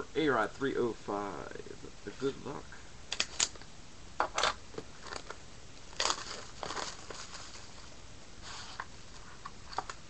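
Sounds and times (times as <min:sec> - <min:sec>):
packaging crinkling: 0:04.4 - 0:07.9.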